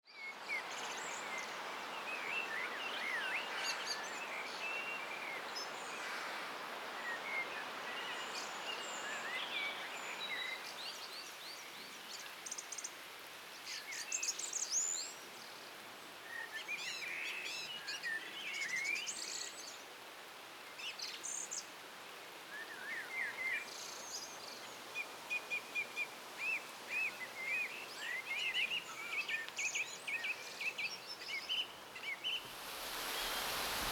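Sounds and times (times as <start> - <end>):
songbirds singing and chirping: 22.5 - 33.9
steady hiss: 32.2 - 33.9.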